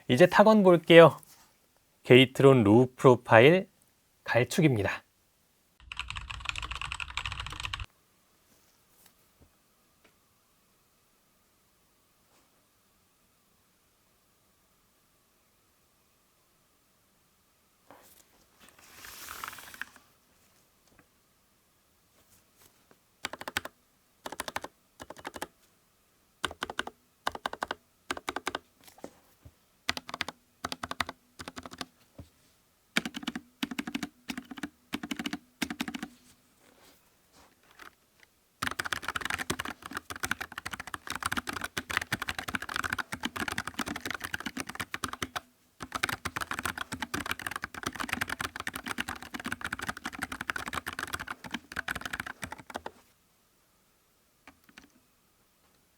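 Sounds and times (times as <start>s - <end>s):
typing on mechanical keyboard: 5.8s - 7.9s, 23.2s - 25.5s, 26.4s - 28.6s, 29.9s - 31.9s, 33.0s - 36.1s, 38.6s - 52.9s, 54.5s - 54.9s.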